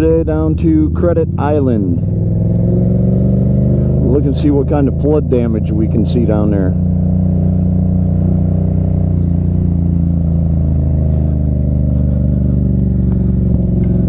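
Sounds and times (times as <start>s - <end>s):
vehicle engine drone: 0.0s - 14.0s.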